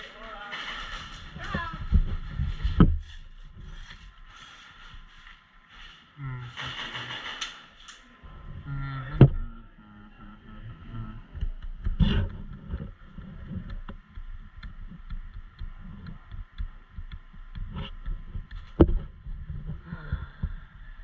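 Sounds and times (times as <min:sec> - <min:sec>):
low thumps and rumble: 0:00.8 - 0:03.8, 0:08.3 - 0:09.6, 0:10.6 - 0:21.0.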